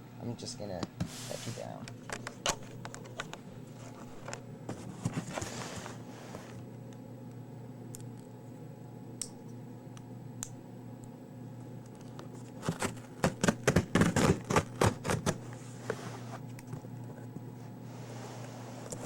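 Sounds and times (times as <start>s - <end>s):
rustling scrape: 1.0s - 1.7s, 3.7s - 6.6s, 15.6s - 16.5s, 17.8s - 19.0s
knocks and scrapes on cardboard box: 12.6s - 15.4s.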